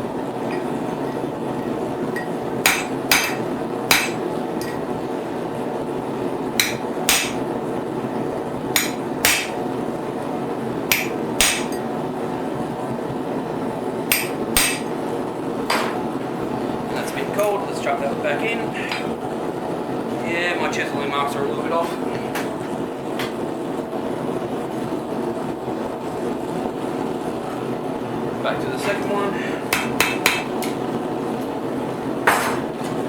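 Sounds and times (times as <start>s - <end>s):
hammer striking a chisel: 2.2s - 4.8s, 6.6s - 7.4s, 8.8s - 9.6s, 10.9s - 11.8s, 14.1s - 14.9s, 29.7s - 30.8s.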